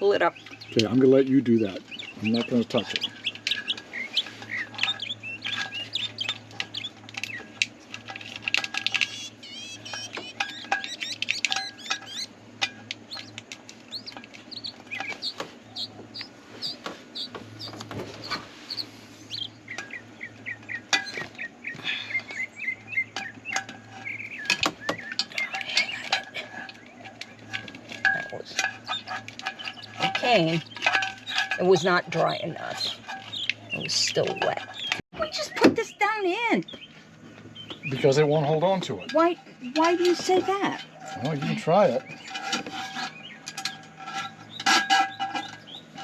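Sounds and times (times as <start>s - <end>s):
small birds chirping: 0.0s - 46.0s
sharp clicks and knocks: 1.9s - 21.8s.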